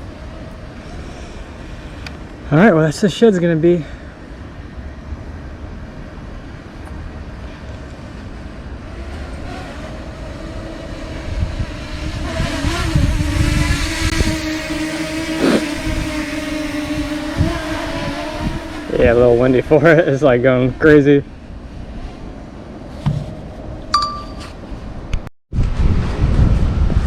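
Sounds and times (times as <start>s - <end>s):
wind rumbling on microphone: 4.1s - 23.9s, 24.6s - 27.0s
drone propellers humming: 8.3s - 22.8s.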